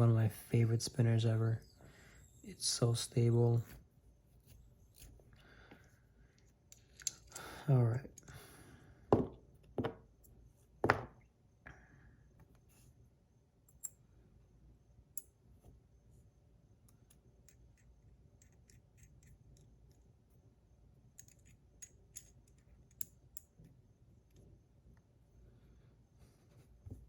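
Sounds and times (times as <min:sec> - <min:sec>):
small metal parts clicking: 0:06.7 - 0:07.6, 0:21.2 - 0:23.5.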